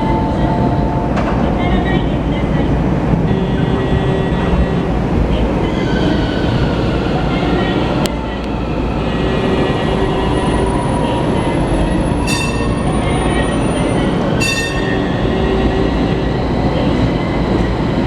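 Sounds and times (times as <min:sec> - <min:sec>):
streetcar running on tracks: 0:00.0 - 0:18.0
wheels squealing on rails: 0:03.3 - 0:18.0
short ringing burst: 0:12.3 - 0:13.1, 0:14.4 - 0:15.1.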